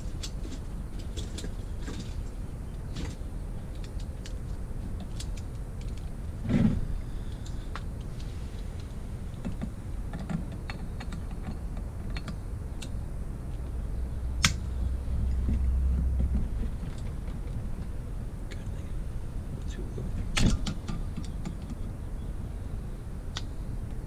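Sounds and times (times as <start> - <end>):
steady low hum: 0.0 - 24.0
hand tools clicking and tapping: 9.4 - 12.9.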